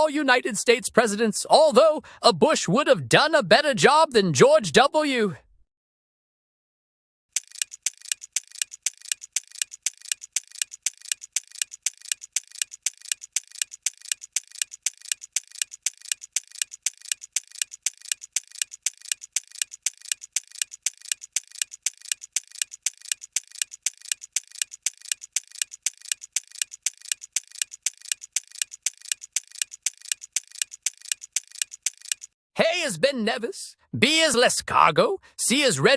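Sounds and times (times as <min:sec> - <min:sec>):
clock ticking: 0:07.4 - 0:32.4.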